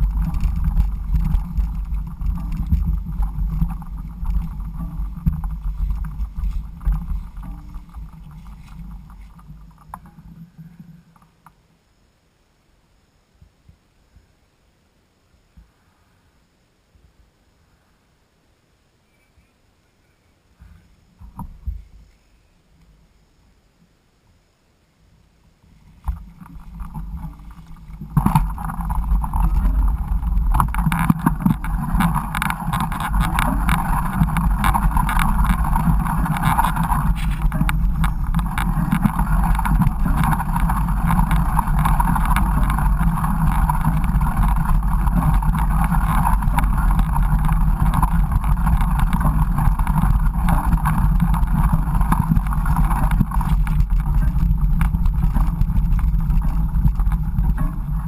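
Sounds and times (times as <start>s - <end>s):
wind on microphone: 0.0s - 10.8s, 25.7s - 58.0s
bike rattling over rough trail: 0.0s - 11.4s, 25.8s - 58.0s.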